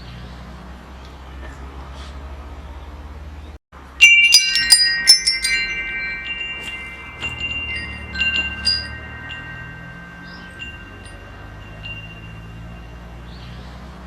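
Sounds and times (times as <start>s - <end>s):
metal wind chimes ringing: 3.8s - 13.8s.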